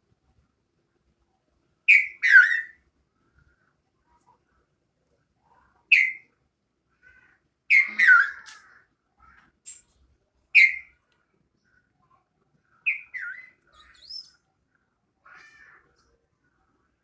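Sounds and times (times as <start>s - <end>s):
bulbul calling: 5.9s - 6.2s, 7.7s - 8.8s.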